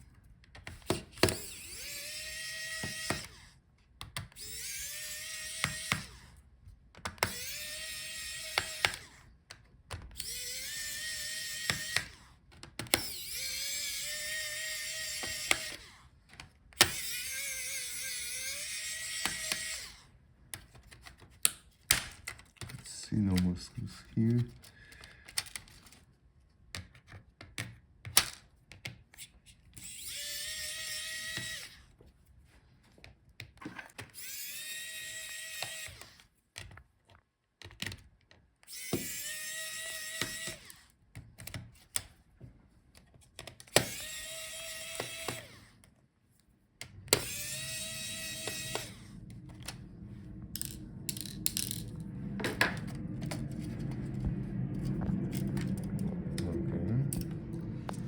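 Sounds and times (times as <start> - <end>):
electric screwdriver whining: 0.8 - 3.6, 4.2 - 6.4, 7.1 - 9.3, 10.0 - 16.1, 16.8 - 20.1, 29.8 - 31.9, 34.0 - 36.3, 38.6 - 40.9, 43.6 - 45.8, 46.8 - 54.2
steady low hum: 46.8 - 58.0.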